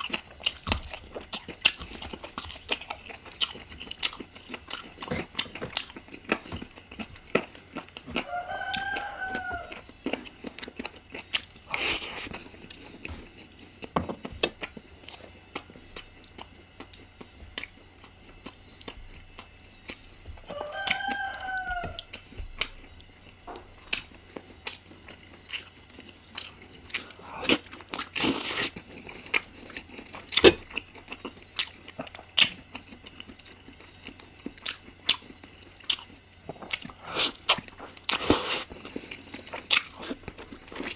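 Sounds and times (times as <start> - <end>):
person chewing and crunching food: 0.0 - 40.9
rooster crowing: 8.1 - 10.2, 20.4 - 22.4.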